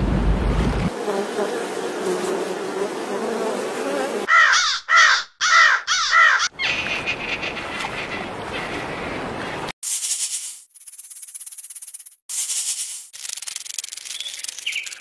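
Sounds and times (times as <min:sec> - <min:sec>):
animal calling: 0:04.3 - 0:08.7.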